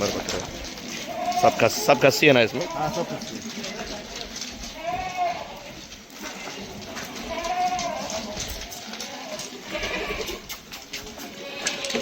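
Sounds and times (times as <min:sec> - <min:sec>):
goats bleating: 0:00.0 - 0:12.0.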